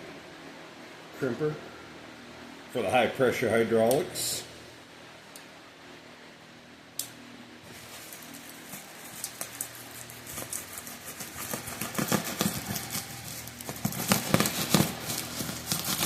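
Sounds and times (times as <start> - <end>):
packaging crackling and rustling: 7.7 - 16.0.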